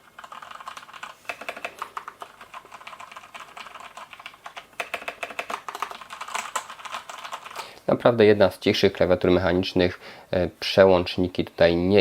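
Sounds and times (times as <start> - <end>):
mechanical keyboard typing: 0.0 - 7.7.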